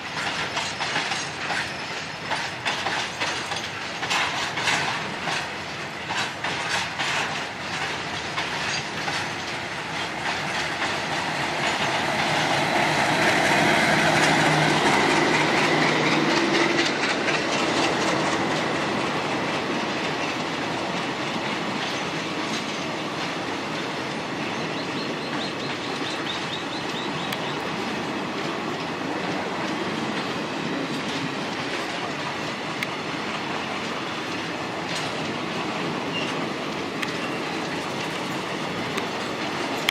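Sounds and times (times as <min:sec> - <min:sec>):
train running on rails: 0:00.0 - 0:39.9
wheels clicking over rail joints: 0:00.0 - 0:39.9.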